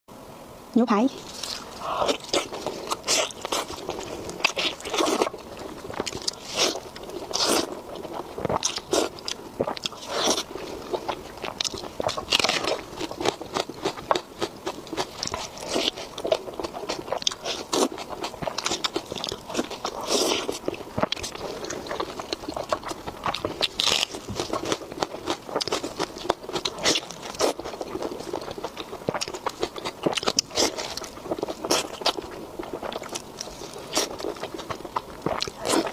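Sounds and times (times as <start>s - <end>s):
person chewing crunchy food: 1.2s - 35.9s.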